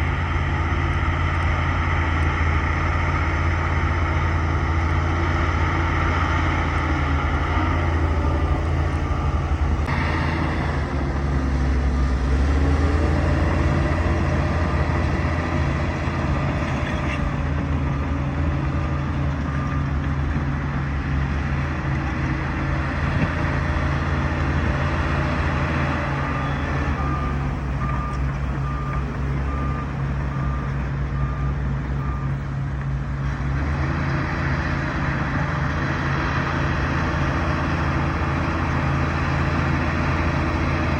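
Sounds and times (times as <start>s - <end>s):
diesel engine running: 0.0s - 40.9s
reversing alarm beeping: 6.0s - 11.5s, 25.8s - 32.4s.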